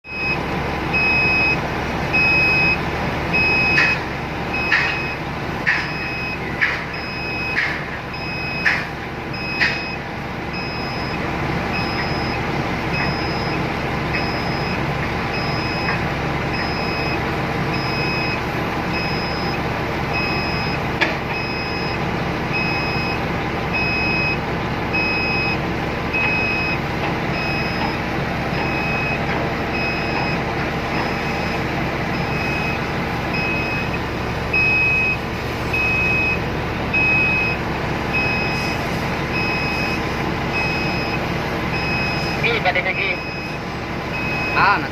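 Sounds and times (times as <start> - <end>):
excavator diesel engine running: 0.0 - 44.9
warning alarm beeping: 0.0 - 44.9
sharp metallic knocks: 4.7 - 5.0, 5.6 - 5.9, 8.6 - 8.9.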